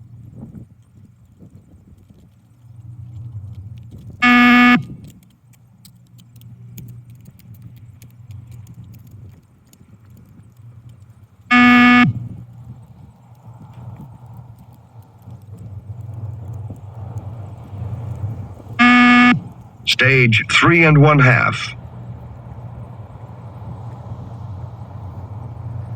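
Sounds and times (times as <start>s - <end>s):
low steady hum: 0.0s - 25.9s
loud electronic beeps: 4.2s - 4.8s, 11.5s - 12.2s, 18.8s - 21.8s.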